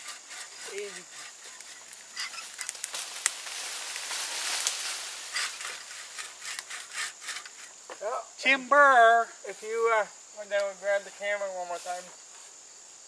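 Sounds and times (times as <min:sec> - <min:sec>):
tree cracking and snapping: 0:01.4 - 0:06.9
branches and leaves breaking: 0:01.6 - 0:05.9.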